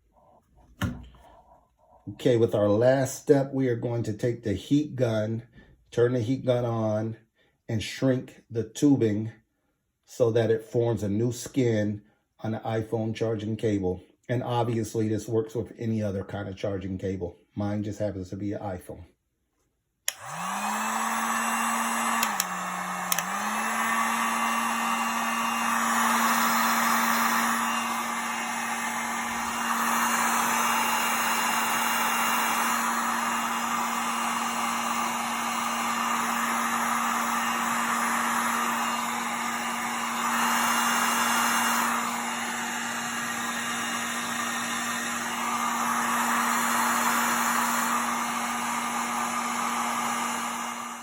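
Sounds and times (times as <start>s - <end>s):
heat gun switch click: 20.1s - 20.4s, 22.1s - 23.4s
heat gun motor hum and rushing air: 20.1s - 51.0s.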